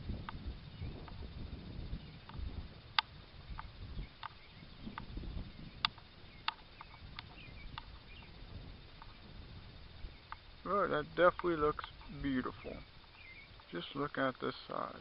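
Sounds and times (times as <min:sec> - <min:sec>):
wind rumble on microphone: 0:00.0 - 0:13.6
faint chirps: 0:00.1 - 0:15.0
sharp clicks: 0:02.2 - 0:05.1, 0:05.8 - 0:09.2, 0:10.2 - 0:10.5, 0:11.1 - 0:13.8.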